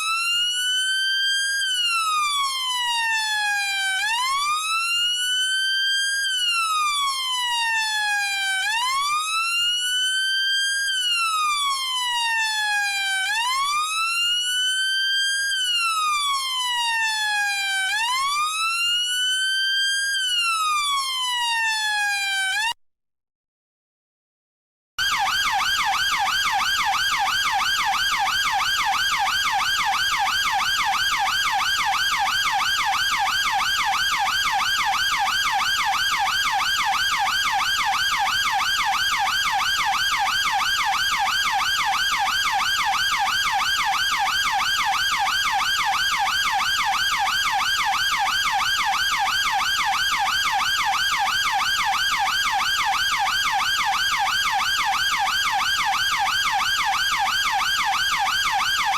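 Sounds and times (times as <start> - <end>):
police car siren yelping: 10.6 - 22.7, 25.0 - 58.9.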